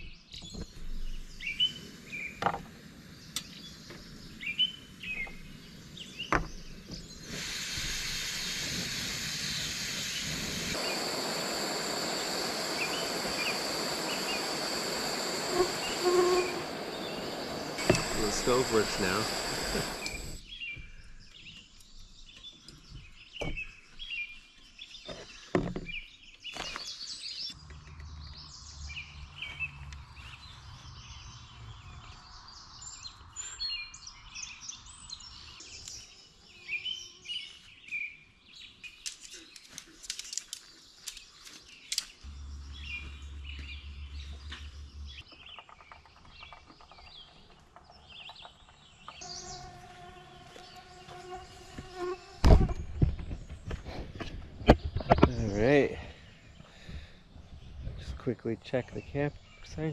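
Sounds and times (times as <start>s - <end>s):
birds chirping and calling: 0.3s - 7.3s, 9.6s - 37.6s, 38.6s - 51.2s
low hum: 8.3s - 20.4s.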